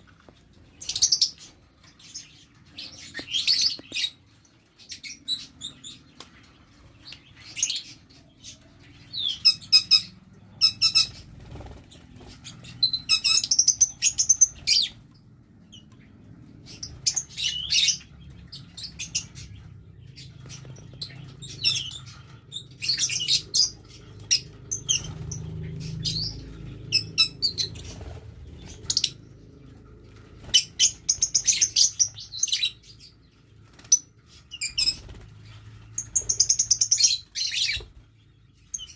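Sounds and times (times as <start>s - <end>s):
lovebirds chirping and chattering: 0.0s - 38.9s.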